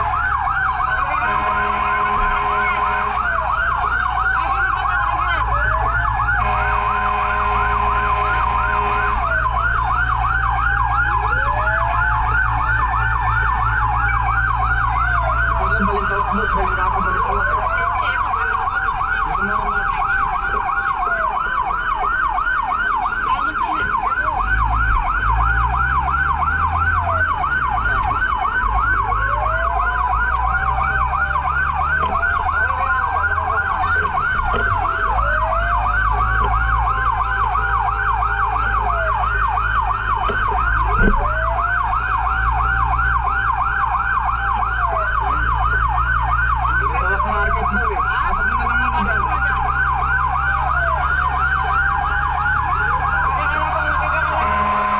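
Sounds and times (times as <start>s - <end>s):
fire truck siren yelp: 0.0s - 54.9s
slower siren wail: 0.0s - 54.9s
vehicle engine running low: 0.0s - 54.9s.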